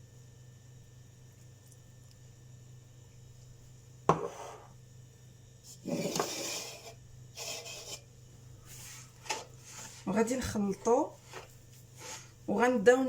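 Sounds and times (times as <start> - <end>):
scraping against a bowl: 5.7 - 8.1.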